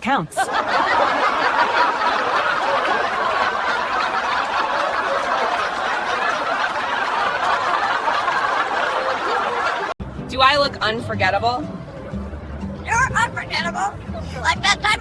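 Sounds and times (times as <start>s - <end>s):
group of people laughing: 0.3s - 10.0s.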